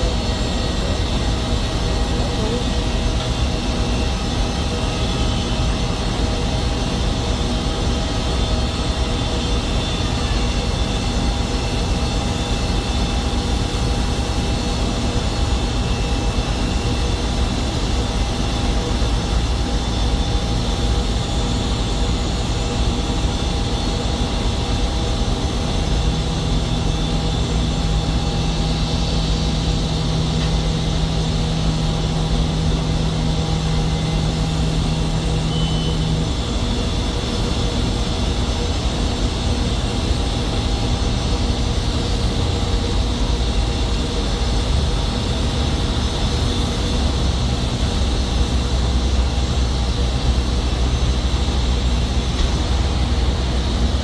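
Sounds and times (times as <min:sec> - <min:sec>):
aircraft engines running: 0:00.0 - 0:54.0
deep steady hum: 0:13.4 - 0:54.0.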